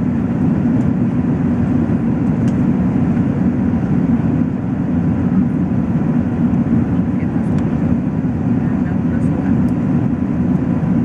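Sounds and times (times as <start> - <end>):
jet engines rumbling: 0.0 - 11.0.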